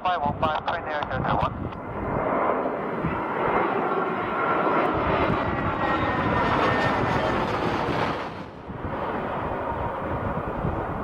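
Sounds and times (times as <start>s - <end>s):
jet engines rushing: 0.0s - 11.0s
wind buffeting microphone: 0.0s - 11.0s.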